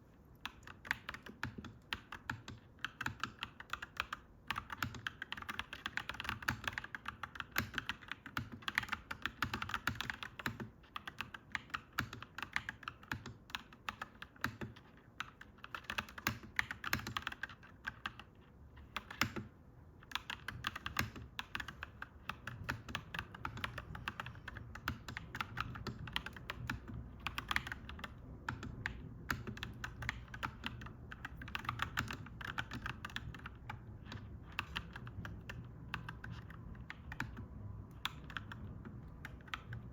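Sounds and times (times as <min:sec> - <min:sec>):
mechanical keyboard typing: 0:00.3 - 0:39.9.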